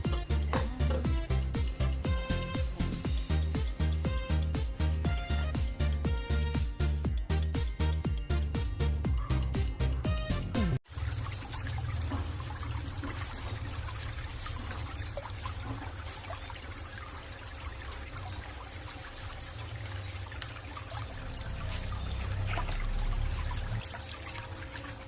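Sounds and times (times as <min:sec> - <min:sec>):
liquid trickling: 0:10.8 - 0:25.0.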